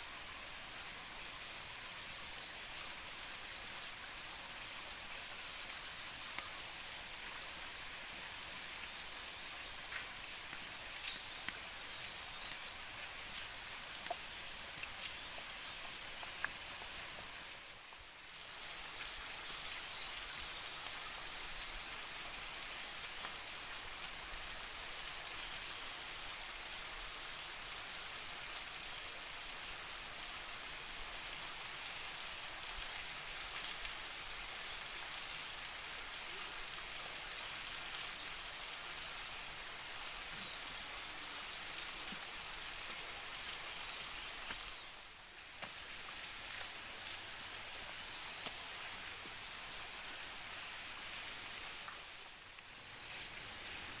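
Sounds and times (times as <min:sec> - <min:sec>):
forest insects chorus: 0:00.0 - 0:54.0.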